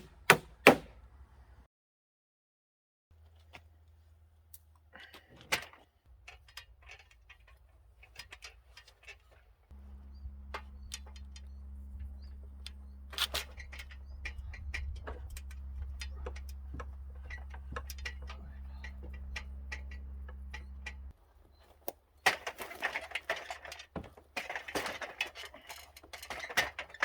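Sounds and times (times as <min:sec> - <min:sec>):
low hum: 0:09.7 - 0:21.1
sharp knocks and clicks: 0:10.0 - 0:21.1.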